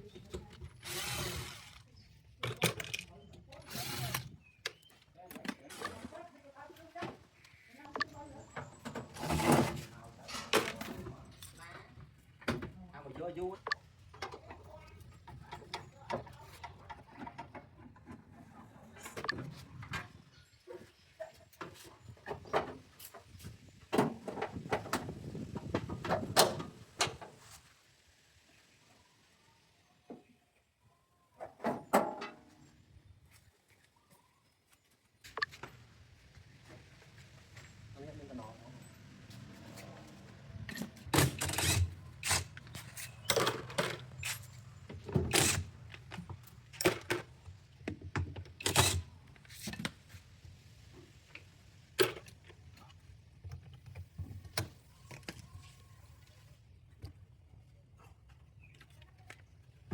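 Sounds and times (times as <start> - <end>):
parts clicking and scraping: 0.1 - 6.2, 39.3 - 50.0
clattering knocks and scrapes: 8.5 - 11.6, 39.2 - 47.4.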